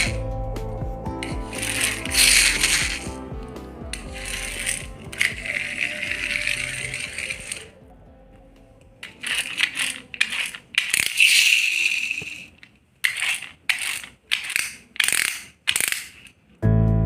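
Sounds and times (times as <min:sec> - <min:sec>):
music: 0:00.0 - 0:09.9, 0:16.6 - 0:17.0
small hard toys clattering: 0:01.2 - 0:03.2, 0:04.0 - 0:07.7, 0:09.0 - 0:16.6.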